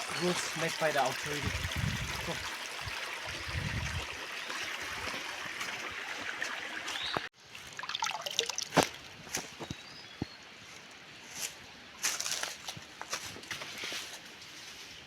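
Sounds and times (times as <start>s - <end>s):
stream water over stones: 0.0s - 9.8s.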